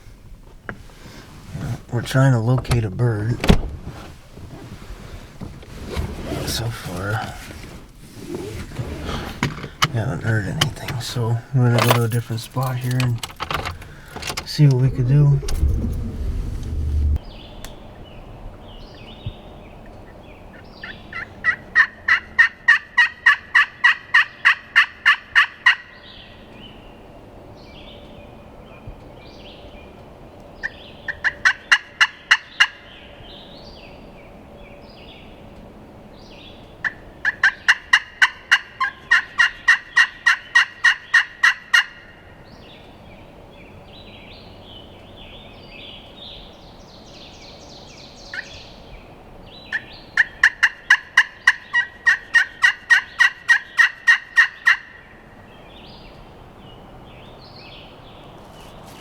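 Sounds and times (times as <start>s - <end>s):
turkey call yelps: 21.1s - 25.9s, 36.8s - 42.0s, 49.7s - 55.0s.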